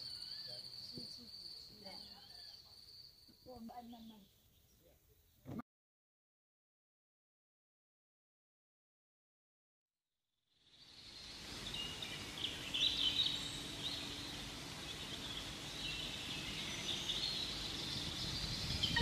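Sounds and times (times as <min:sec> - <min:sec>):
small birds chirping: 0:00.0 - 0:05.5, 0:10.6 - 0:19.0
outdoor ambience: 0:00.0 - 0:05.6, 0:10.5 - 0:19.0.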